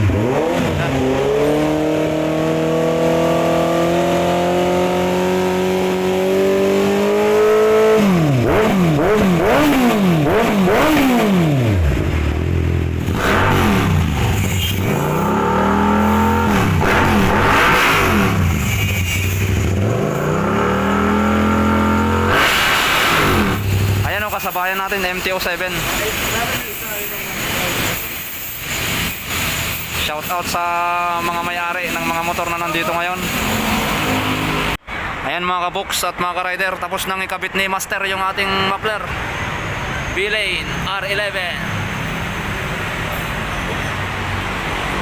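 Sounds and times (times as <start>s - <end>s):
motorcycle engine revving: 0.0s - 24.3s.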